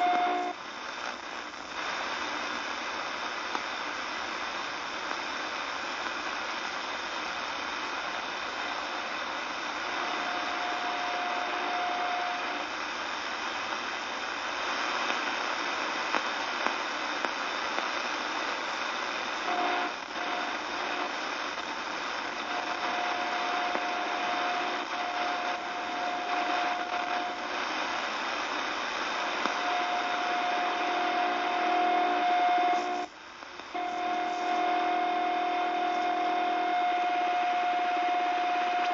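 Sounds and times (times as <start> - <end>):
whistling radio tone: 0.0 - 0.6, 9.8 - 12.7, 19.5 - 28.1, 29.1 - 33.1, 33.8 - 38.9
radio static hiss: 0.0 - 38.9.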